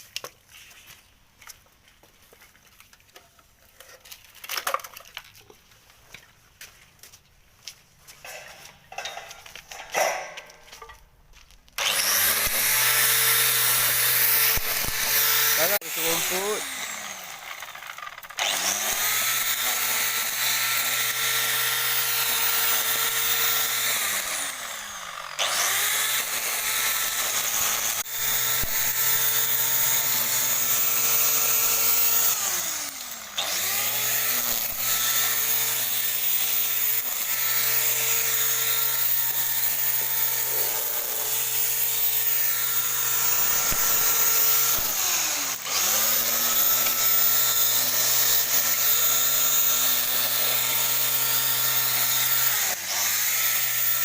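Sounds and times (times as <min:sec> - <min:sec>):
grass trimmer whining: 0:11.8 - 0:54.0.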